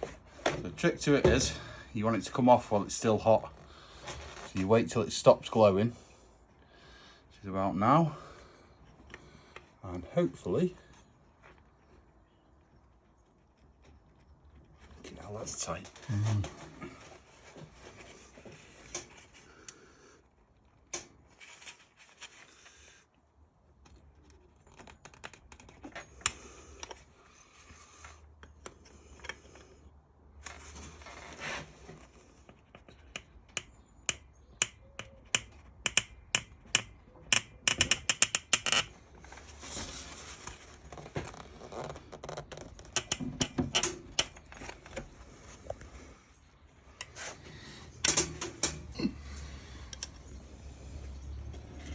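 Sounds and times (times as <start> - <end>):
spanner clicking on metal nut: 33.1 - 38.9, 43.0 - 44.4.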